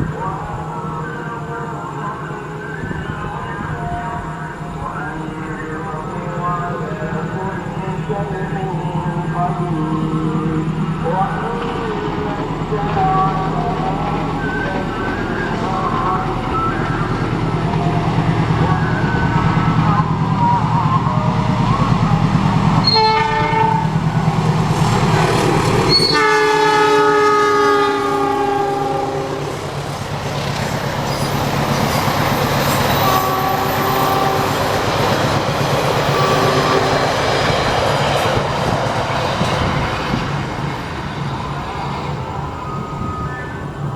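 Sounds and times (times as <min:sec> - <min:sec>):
train rumble: 0:00.0 - 0:43.9
train horn blasts: 0:22.8 - 0:24.1, 0:25.0 - 0:29.8, 0:31.2 - 0:35.4, 0:36.0 - 0:38.8
train wheels clacking: 0:29.4 - 0:42.3.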